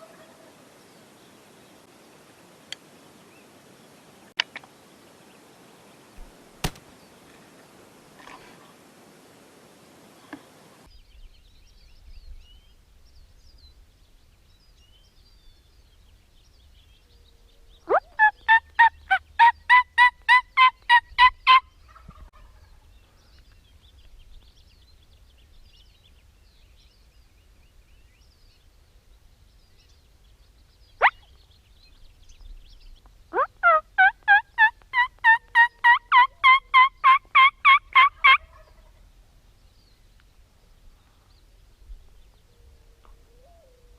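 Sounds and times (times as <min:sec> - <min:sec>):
turkey yelping: 0:17.9 - 0:21.6, 0:33.3 - 0:38.9.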